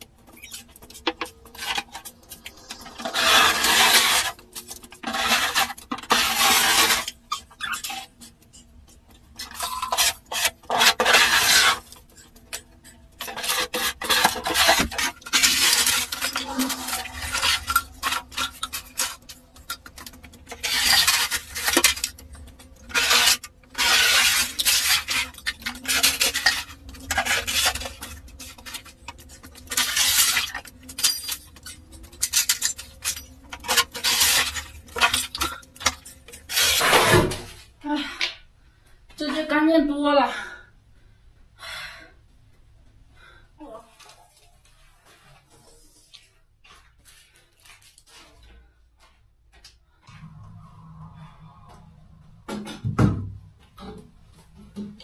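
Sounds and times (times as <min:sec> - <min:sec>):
broom scraping and brushing: 0:00.5 - 0:08.4, 0:09.4 - 0:37.7.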